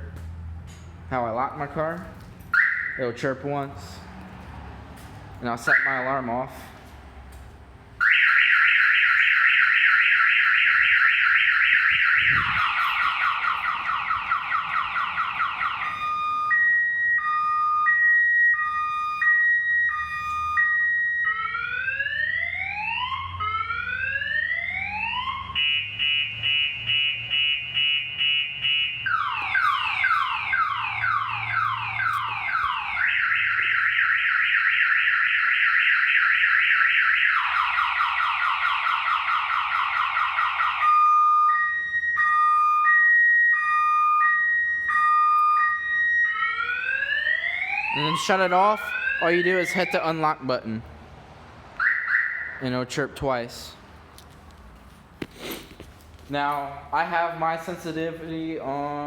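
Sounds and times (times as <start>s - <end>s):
car alarm siren: 2.5s - 3.4s, 5.6s - 6.3s, 8.0s - 50.5s, 51.8s - 52.6s.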